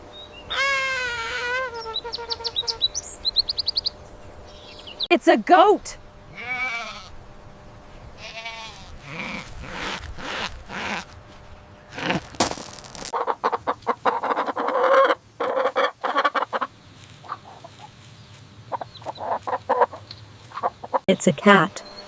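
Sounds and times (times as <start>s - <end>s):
goat bleating: 6.3s - 7.2s, 8.2s - 11.1s
hens clucking: 13.1s - 21.2s.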